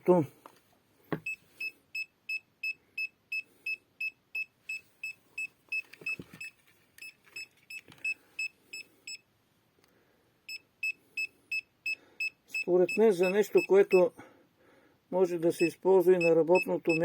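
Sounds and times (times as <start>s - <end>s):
meter alarm high beeps: 1.2s - 6.5s, 10.5s - 14.1s, 15.6s - 17.0s.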